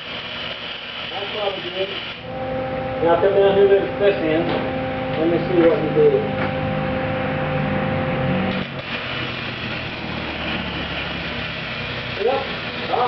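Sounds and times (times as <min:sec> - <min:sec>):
machine hum: 0:00.0 - 0:13.0
rushing hiss: 0:08.8 - 0:13.0.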